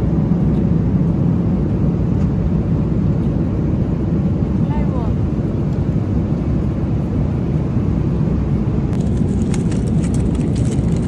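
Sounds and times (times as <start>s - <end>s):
airliner cabin roar: 0.0s - 11.0s.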